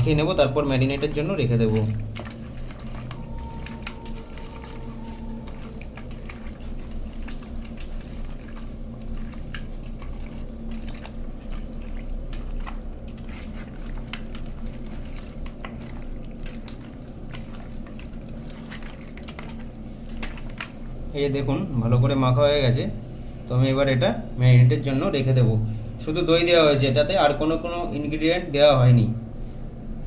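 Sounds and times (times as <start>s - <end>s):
low hum: 0.0s - 11.5s
hands squelching meat in bowl: 0.0s - 21.8s.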